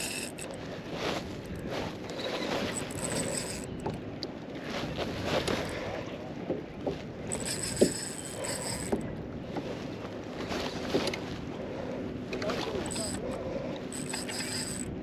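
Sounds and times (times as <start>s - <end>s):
fishing reel winding: 0.0s - 0.6s, 2.6s - 3.9s, 7.3s - 9.0s, 12.8s - 13.3s, 13.9s - 14.9s
water: 0.0s - 15.0s.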